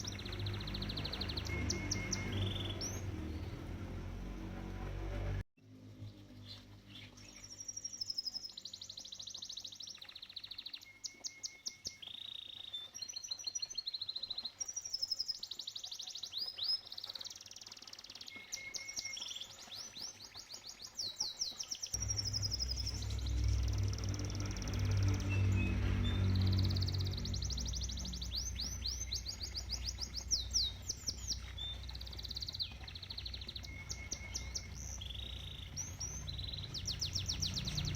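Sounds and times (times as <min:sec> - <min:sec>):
canary singing: 0:00.0 - 0:03.7, 0:21.9 - 0:37.9
low steady rumble: 0:22.0 - 0:37.9.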